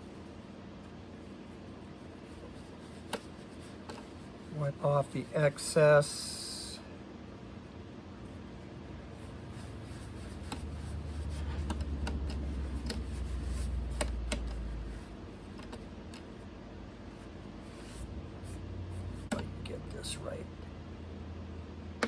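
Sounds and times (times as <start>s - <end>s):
light clicks and rubbing of hands: 10.0s - 14.7s.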